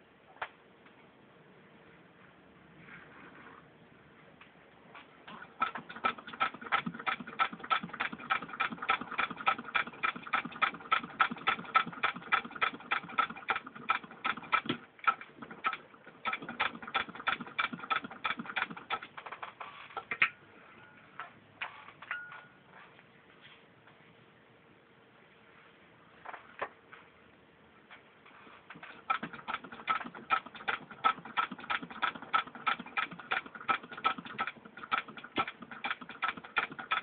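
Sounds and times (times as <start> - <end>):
sewing machine clicking: 5.3 - 20.3, 28.6 - 37.0.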